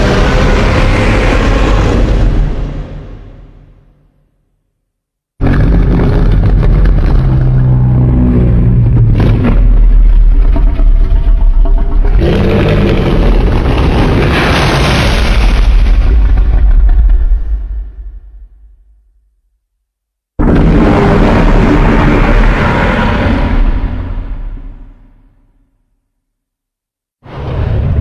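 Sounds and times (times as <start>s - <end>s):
deep monster roar: 0.0s - 3.8s, 5.4s - 18.4s, 20.4s - 25.2s.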